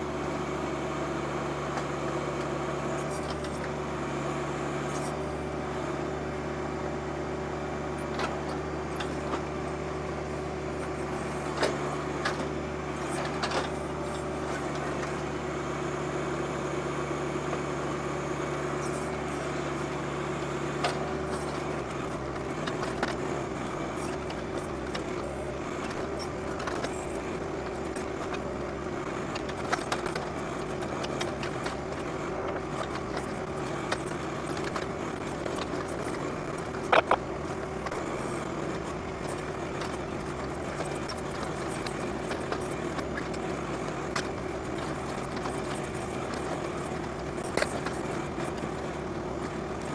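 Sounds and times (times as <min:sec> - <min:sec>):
tractor diesel engines running: 0:00.0 - 0:49.9
knocks and clicks from digging: 0:34.0 - 0:37.2.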